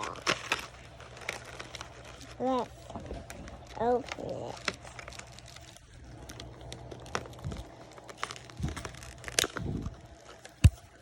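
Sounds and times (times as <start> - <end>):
packaging crinkling: 0.0 - 11.0
sharp clicks and crackles: 0.0 - 11.0.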